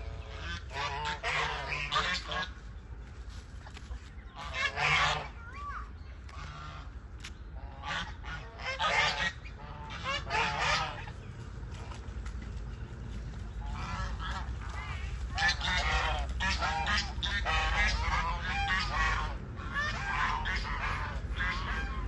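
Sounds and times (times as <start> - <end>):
goose honking: 0.0 - 2.6, 4.3 - 5.4, 6.3 - 6.9, 7.6 - 11.2, 13.6 - 22.0.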